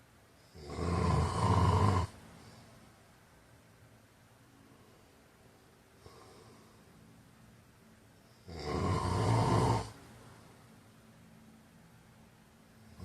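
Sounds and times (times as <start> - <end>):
man snoring: 0.5 - 2.2, 8.4 - 10.0
faint breath: 2.2 - 3.1, 4.5 - 7.2, 10.0 - 10.9.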